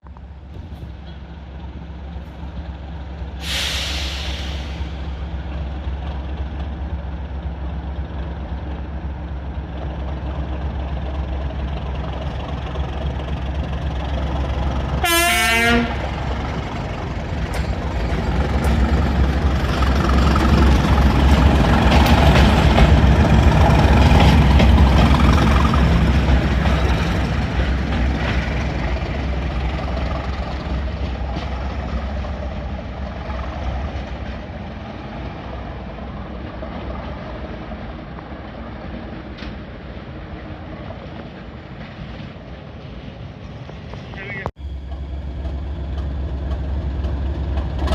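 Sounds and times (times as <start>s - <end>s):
diesel locomotive engine: 0.0s - 47.9s
air hiss: 3.4s - 5.2s
train horn blast: 15.0s - 16.2s.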